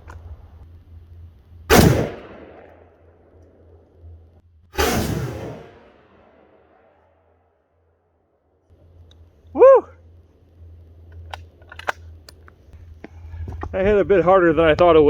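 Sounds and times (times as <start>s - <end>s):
rifle shots: 1.7s - 3.2s, 4.8s - 7.0s.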